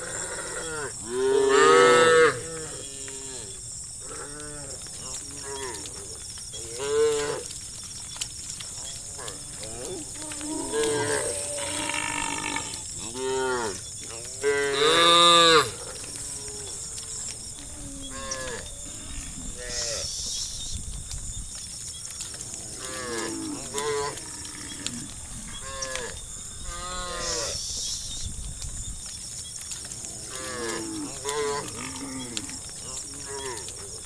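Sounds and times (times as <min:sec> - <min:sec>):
cows mooing: 0:00.0 - 0:06.0, 0:08.8 - 0:20.0, 0:22.5 - 0:27.6.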